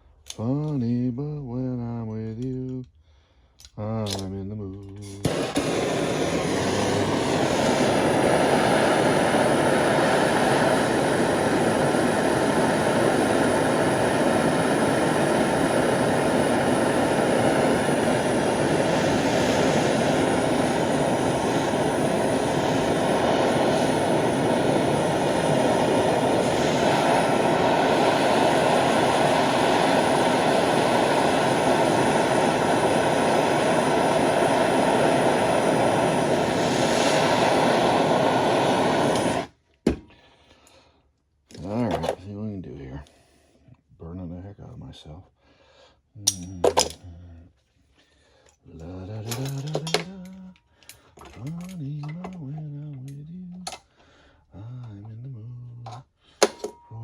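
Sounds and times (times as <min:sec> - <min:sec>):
gas torch roaring: 0:05.0 - 0:39.6.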